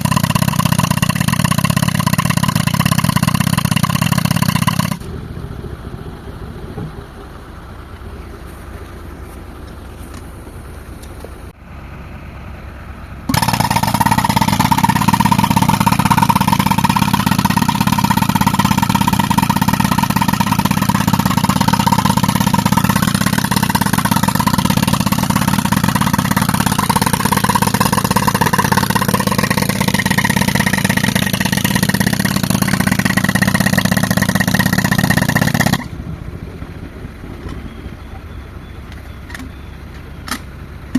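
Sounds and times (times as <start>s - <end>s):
air compressor running: 13.3s - 35.7s.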